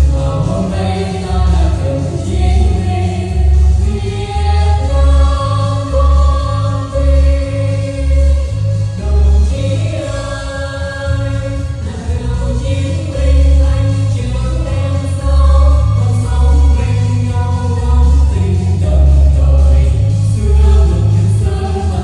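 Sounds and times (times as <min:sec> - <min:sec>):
steady bass beat accompaniment: 0:00.0 - 0:22.0
vocal trio singing a march: 0:00.0 - 0:22.0.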